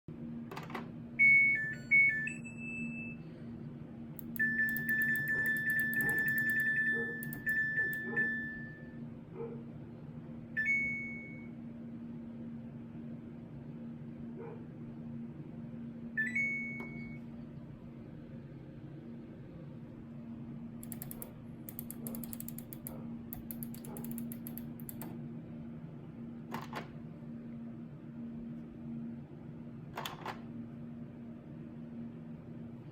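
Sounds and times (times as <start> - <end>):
low steady hum: 0.1 - 32.9
long steady beep: 1.2 - 3.3, 4.2 - 9.0, 10.6 - 11.5
click: 4.2 - 8.1, 20.8 - 25.2
electronic beeping tune: 4.2 - 8.9
short beeps: 4.2 - 9.0.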